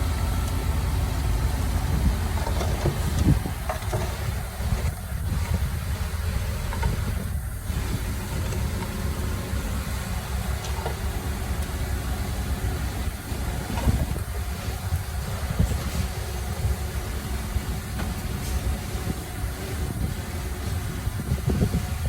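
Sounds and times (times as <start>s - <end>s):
heavy machinery engine rumbling: 0.0s - 22.0s.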